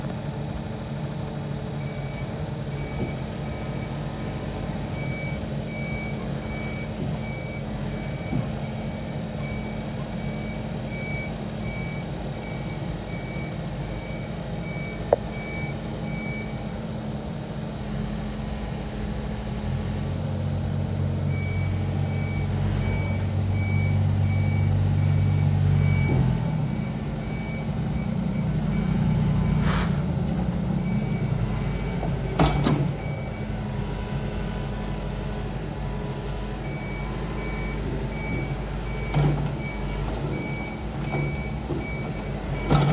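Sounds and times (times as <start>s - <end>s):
excavator diesel engine running: 0.0s - 42.9s
travel alarm beeping: 21.4s - 33.5s, 36.7s - 42.9s.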